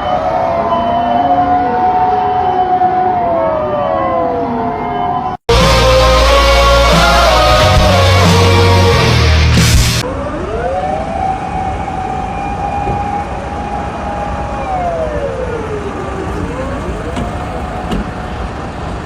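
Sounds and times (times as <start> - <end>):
siren wailing: 0.0 - 9.1, 10.0 - 18.6
music: 5.5 - 10.0.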